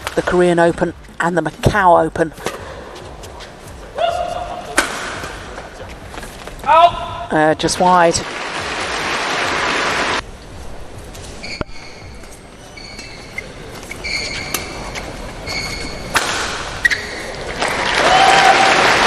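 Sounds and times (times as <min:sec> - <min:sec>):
rackets striking shuttlecock: 0:04.7 - 0:05.7, 0:14.4 - 0:17.6
shoes squeaking on court: 0:05.2 - 0:06.6, 0:11.0 - 0:17.6
crowd cheering and applause: 0:17.6 - 0:19.0.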